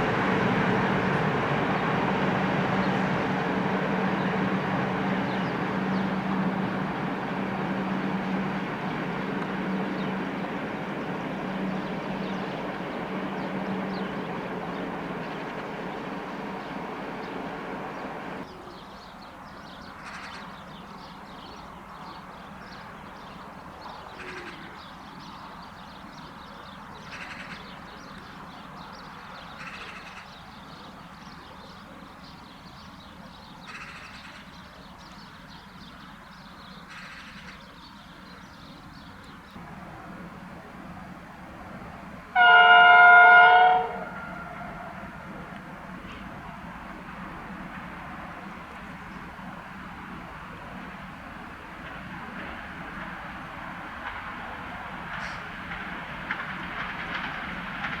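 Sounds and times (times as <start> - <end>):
train rumbling by: 0.0 - 58.0
bird calling: 1.7 - 18.7.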